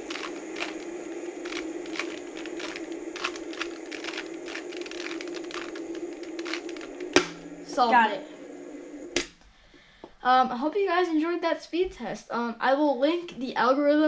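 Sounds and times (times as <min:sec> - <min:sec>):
puzzle cube clicking: 0:00.0 - 0:07.4
steady low hum: 0:00.0 - 0:11.4.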